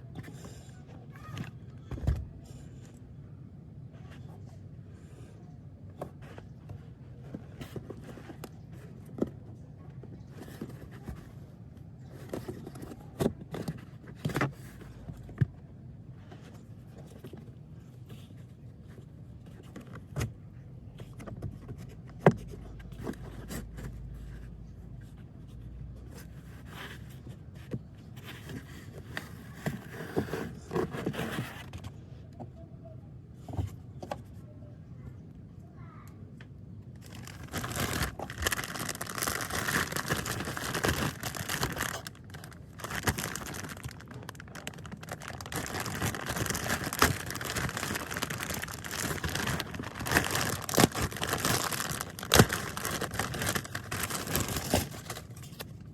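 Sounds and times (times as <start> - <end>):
scraping and rustling: 6.0 - 15.5, 20.9 - 32.0, 37.0 - 55.9.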